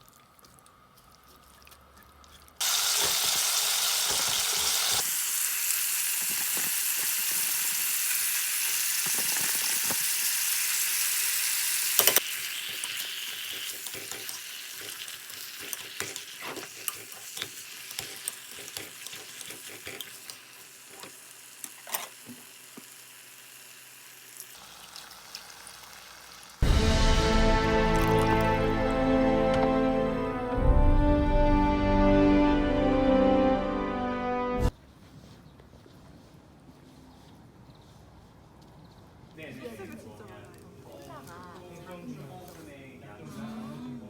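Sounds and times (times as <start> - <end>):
food sizzling in a hot pan: 2.6 - 28.9.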